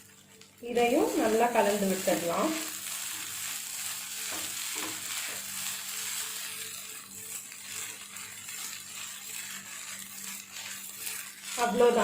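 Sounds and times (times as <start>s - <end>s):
faint sizzle: 0.0s - 12.0s
spatula stirring food in pan: 0.0s - 12.0s
spatula scraping pan: 3.0s - 12.0s.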